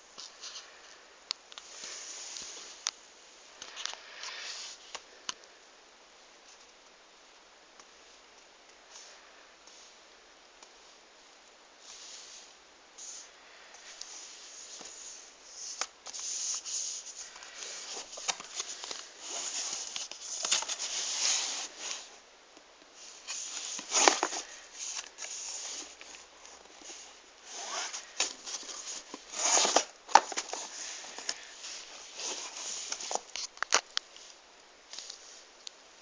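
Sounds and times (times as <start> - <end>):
cardboard and plastic rustling: 14.0 - 22.2, 23.0 - 34.0
packaging scrapes: 23.1 - 33.8.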